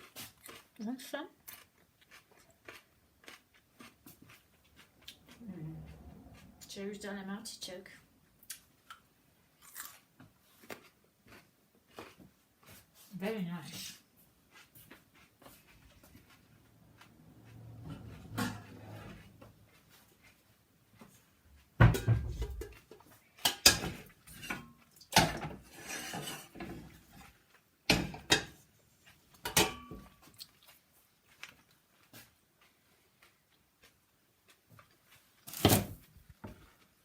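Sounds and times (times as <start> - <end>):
pans and dishes clattering: 17.9 - 18.8, 21.8 - 27.2, 27.9 - 28.6, 29.4 - 30.2.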